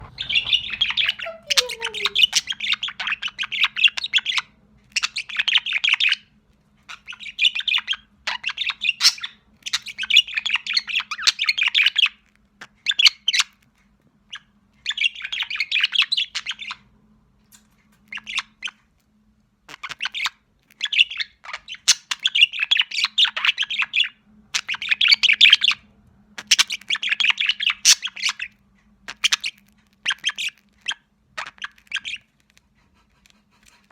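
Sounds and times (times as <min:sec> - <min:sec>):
budgerigar chattering: 0:00.0 - 0:04.4, 0:19.7 - 0:25.8, 0:26.4 - 0:28.5.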